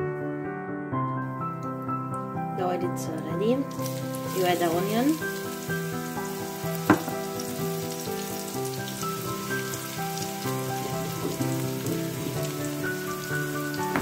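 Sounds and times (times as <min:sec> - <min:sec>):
instrumental background music: 0:00.0 - 0:14.0
onion sizzling in oil: 0:03.0 - 0:14.0.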